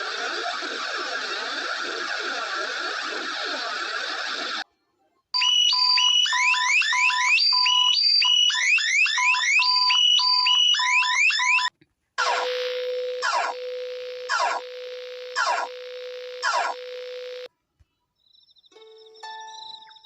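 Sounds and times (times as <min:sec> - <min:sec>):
low alarm tone with rising sweep: 0:05.4 - 0:17.5.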